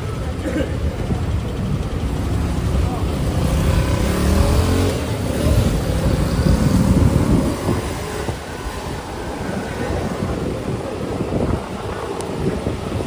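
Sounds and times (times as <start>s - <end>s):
street noise: 0.0s - 13.0s
wind buffeting microphone: 0.0s - 13.0s
vehicle engine passing: 1.8s - 11.4s.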